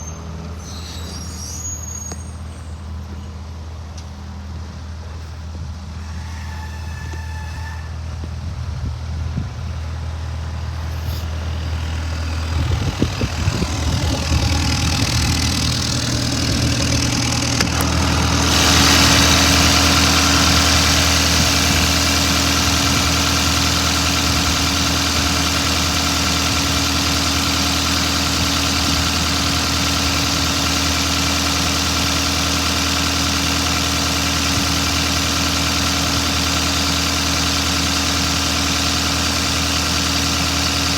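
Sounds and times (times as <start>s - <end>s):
excavator diesel engine running: 0.0s - 40.9s
clunks: 11.2s - 18.8s.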